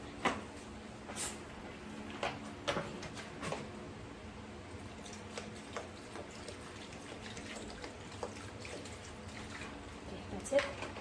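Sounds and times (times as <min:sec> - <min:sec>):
soda pouring and splashing: 0:04.9 - 0:10.1.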